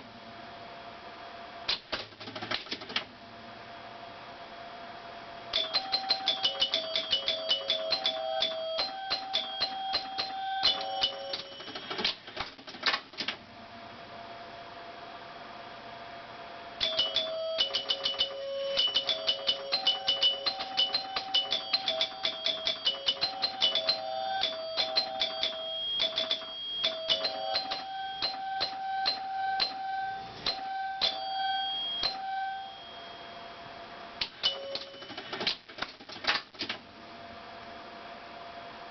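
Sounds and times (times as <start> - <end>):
pinball machine chimes: 5.6 - 12.2, 16.8 - 33.4, 34.3 - 35.4.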